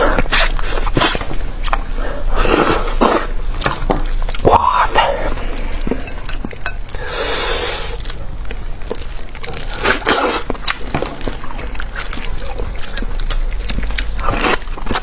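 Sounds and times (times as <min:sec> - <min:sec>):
wet smacking and crunching chewing: 0:07.9 - 0:15.0.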